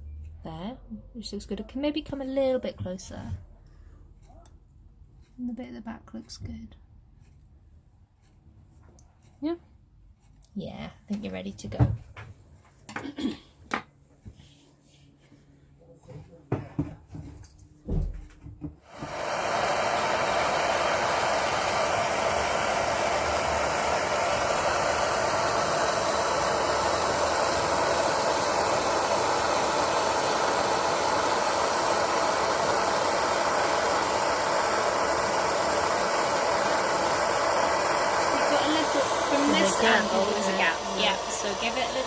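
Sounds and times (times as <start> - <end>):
gas torch hissing: 18.8 - 42.0.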